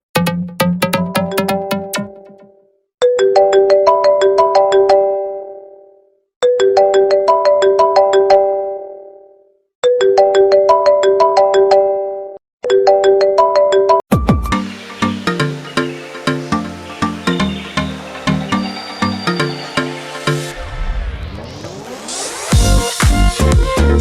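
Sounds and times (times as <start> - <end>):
phone ringtone melody: 3.0 - 5.8, 6.4 - 9.2, 9.9 - 20.6.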